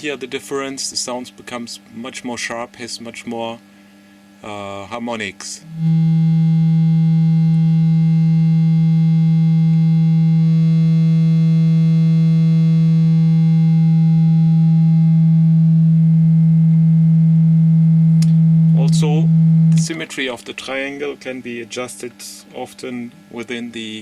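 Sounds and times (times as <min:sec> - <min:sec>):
distorted synthesizer tone: 0:05.6 - 0:21.1.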